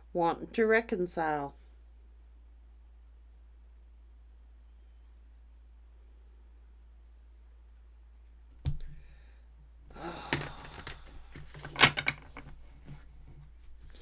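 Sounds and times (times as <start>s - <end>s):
clattering and rustling handling noise: 10.3s - 14.0s.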